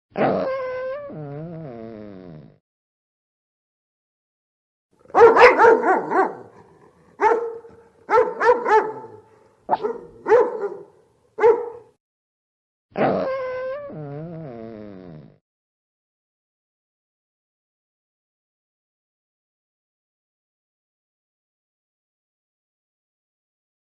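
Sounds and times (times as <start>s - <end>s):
dog barking: 5.1s - 11.9s
dog long wavering cry: 5.2s - 11.8s.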